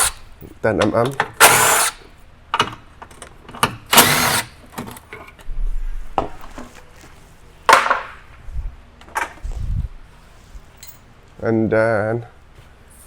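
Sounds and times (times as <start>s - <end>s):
handheld power tool bursts: 0.0s - 0.2s, 1.4s - 2.0s, 3.9s - 4.6s.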